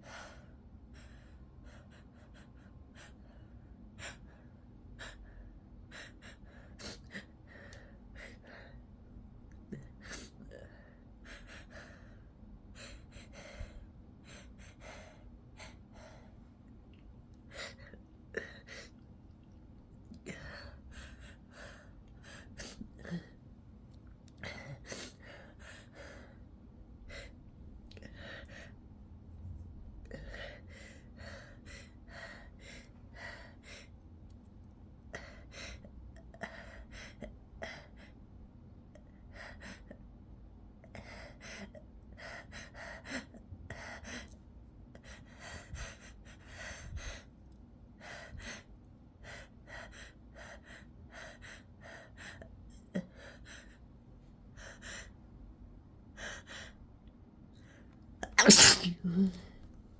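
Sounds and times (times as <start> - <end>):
loud sneeze: 58.3 - 59.3.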